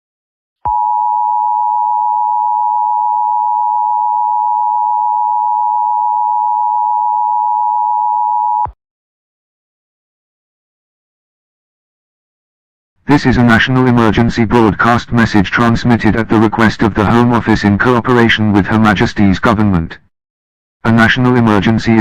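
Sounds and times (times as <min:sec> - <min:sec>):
emergency alert tone: 0:00.7 - 0:08.8.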